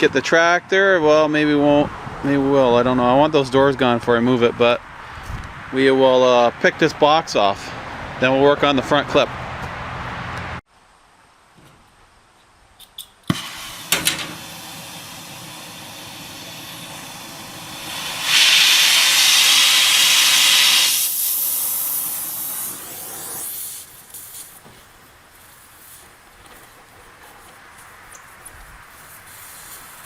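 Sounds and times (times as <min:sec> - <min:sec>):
cutting torch pops: 0:12.9 - 0:24.9
cutting torch flame hissing: 0:13.3 - 0:26.0.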